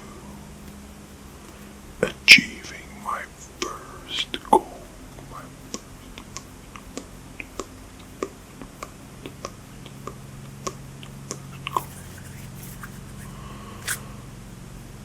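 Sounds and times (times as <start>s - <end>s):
faint low hum: 0.0s - 15.0s
soft hand clicks and snaps: 11.6s - 14.0s.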